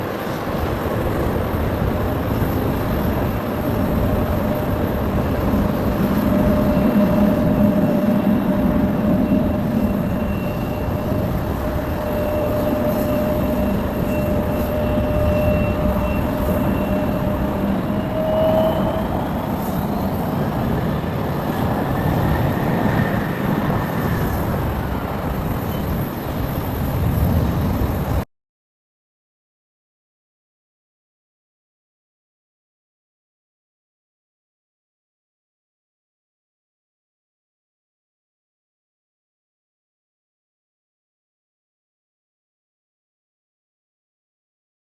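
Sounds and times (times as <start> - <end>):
jet engines running: 0.0 - 28.2.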